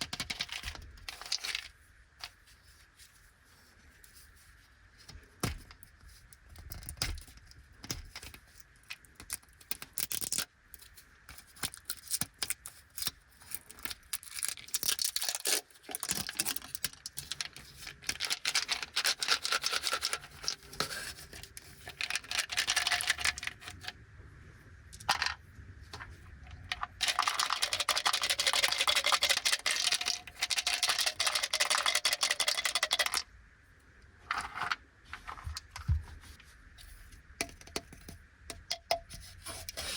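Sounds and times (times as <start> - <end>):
plastic packets crinkling: 13.7 - 23.8, 26.8 - 33.2.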